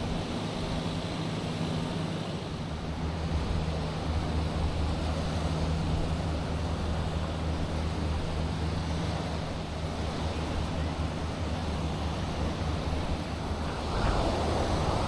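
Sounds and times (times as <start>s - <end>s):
surf: 0.0s - 15.0s
wind rushing: 13.2s - 15.0s.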